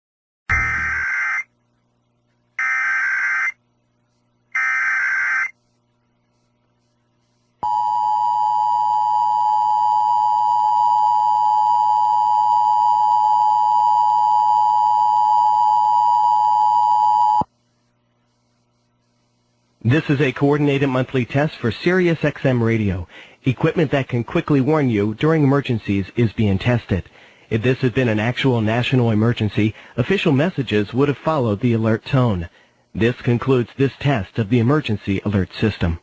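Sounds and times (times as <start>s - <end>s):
harsh electronic data warble: 0.5s - 1.5s, 4.6s - 5.6s
steady shrill attention tone: 0.5s - 1.5s.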